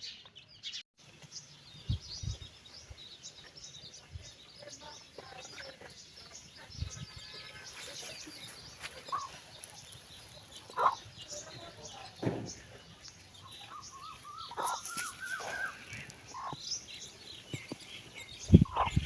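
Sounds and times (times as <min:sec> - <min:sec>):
chicks peeping: 0:01.2 - 0:19.0
hen calling: 0:06.9 - 0:09.7, 0:10.4 - 0:12.1, 0:12.9 - 0:16.9.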